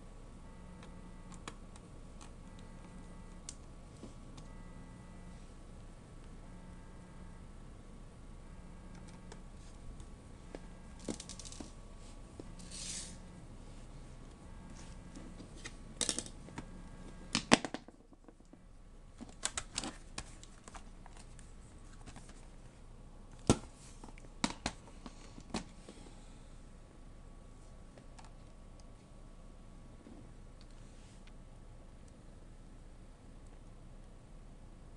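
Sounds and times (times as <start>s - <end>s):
short scraping sounds: 12.6s - 13.2s
plastic laptop parts clicking: 19.2s - 21.4s.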